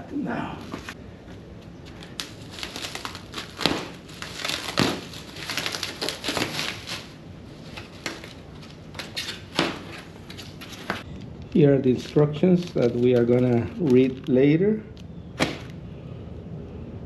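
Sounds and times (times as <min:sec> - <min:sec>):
packaging crinkling and rustling: 0:01.9 - 0:11.0, 0:11.9 - 0:15.8.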